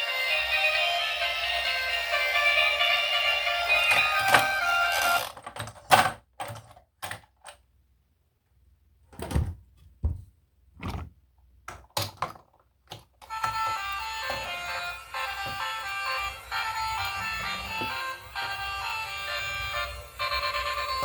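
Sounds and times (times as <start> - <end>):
objects knocking and thudding: 9.1 - 14.6.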